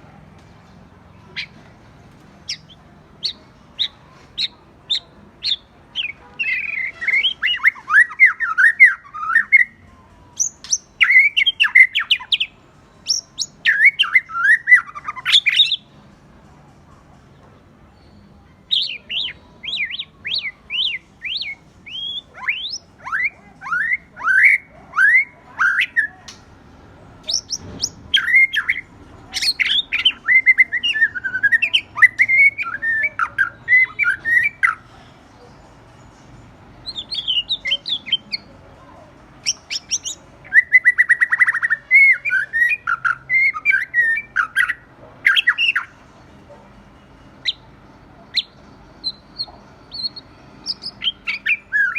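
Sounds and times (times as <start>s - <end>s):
bird singing whistled notes: 2.4s - 9.8s, 10.4s - 15.9s, 18.0s - 26.4s, 27.2s - 34.8s, 36.8s - 38.5s, 39.4s - 45.9s, 47.4s - 47.7s, 48.3s - 51.9s.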